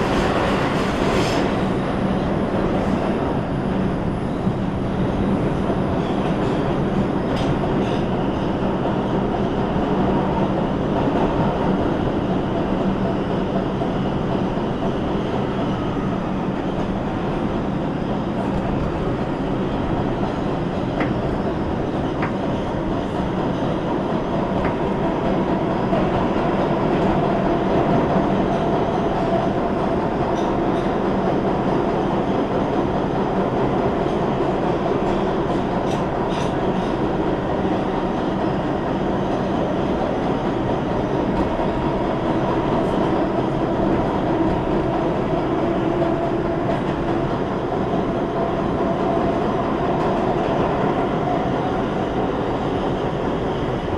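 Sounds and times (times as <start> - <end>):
subway train wheels rumbling on rails: 0.0 - 53.9.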